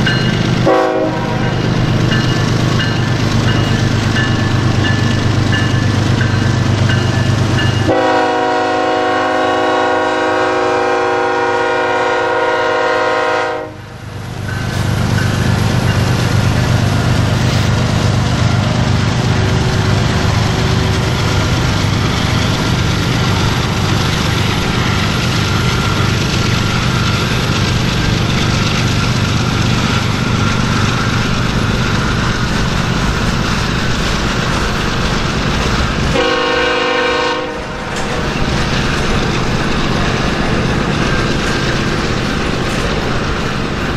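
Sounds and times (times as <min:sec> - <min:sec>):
locomotive engine rumble: 0:00.0 - 0:43.9
passing train: 0:00.0 - 0:43.9
locomotive horn blast: 0:00.6 - 0:01.5, 0:07.8 - 0:13.9, 0:36.1 - 0:37.8.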